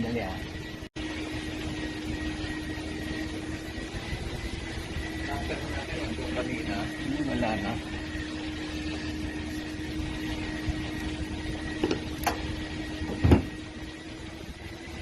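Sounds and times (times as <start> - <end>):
steady hum with held tone: 0.0 - 15.0
knock: 13.2 - 13.5.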